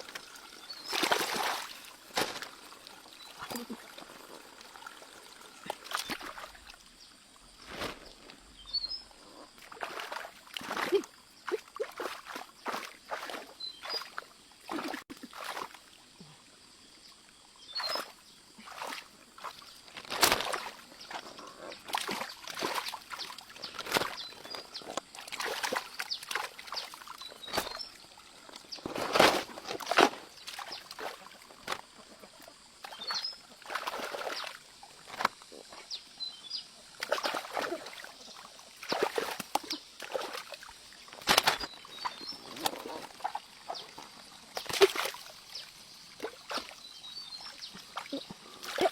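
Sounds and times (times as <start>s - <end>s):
water splashing and sloshing: 0.0s - 48.9s
faint bird chirps: 13.6s - 14.2s.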